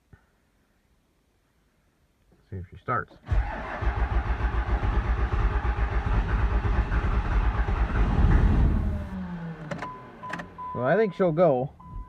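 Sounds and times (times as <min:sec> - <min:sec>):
diesel engine cranking: 0:03.3 - 0:10.8.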